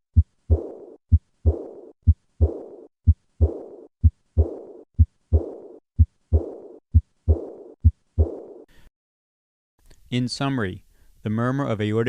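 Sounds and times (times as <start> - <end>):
heartbeat: 0.1 - 8.7
high-pitched heart murmur: 0.1 - 8.7.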